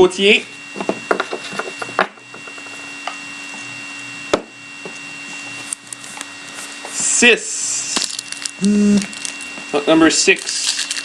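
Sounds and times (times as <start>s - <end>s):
faint electrical hum: 0.0s - 11.0s.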